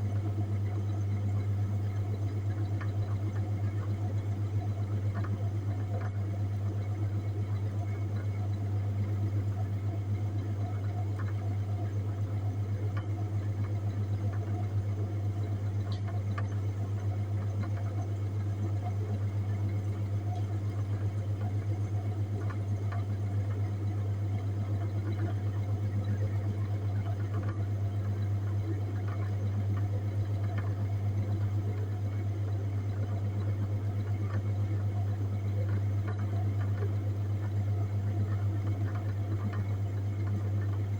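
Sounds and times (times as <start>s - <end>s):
faint ticks: 32.9s - 40.9s.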